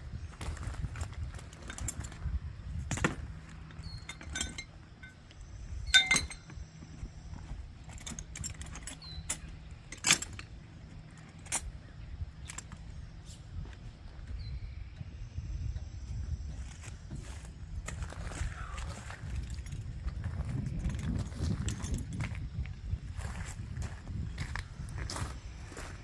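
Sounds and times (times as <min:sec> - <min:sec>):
metal tools clinking: 0:00.6 - 0:13.0, 0:17.9 - 0:22.4.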